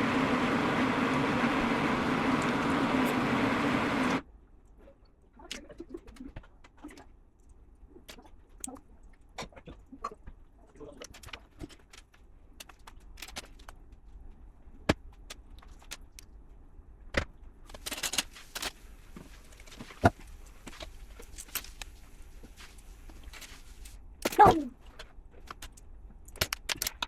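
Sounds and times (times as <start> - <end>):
rustling: 17.6 - 24.0
plastic toy bricks clicking: 25.4 - 27.0.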